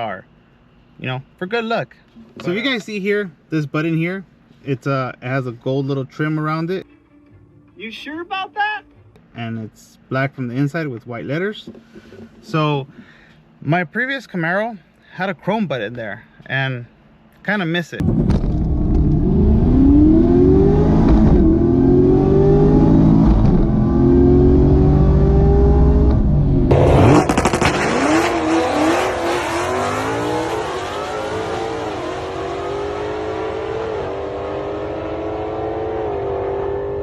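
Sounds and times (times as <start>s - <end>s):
car engine revving: 18.0s - 37.0s.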